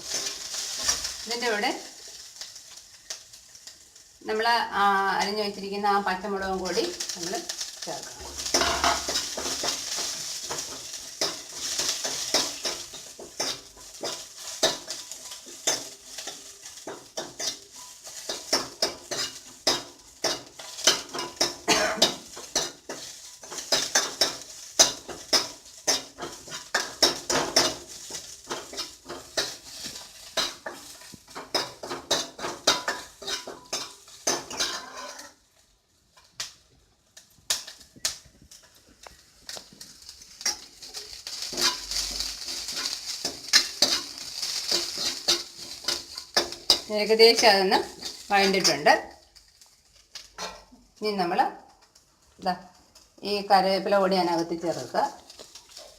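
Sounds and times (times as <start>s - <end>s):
spoon scraping a pan: 0.0s - 3.3s, 7.0s - 35.4s, 37.5s - 49.4s, 50.1s - 50.8s
oil sizzling: 0.0s - 55.9s.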